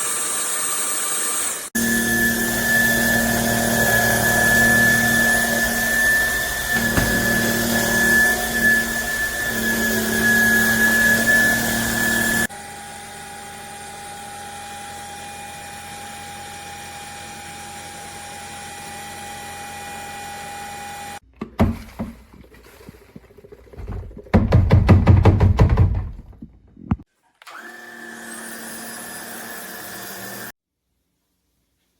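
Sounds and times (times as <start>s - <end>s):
stick vacuum cleaner motor whining: 0.0s - 21.2s, 27.4s - 30.5s
sharp knocks: 6.7s - 7.7s, 24.3s - 27.0s.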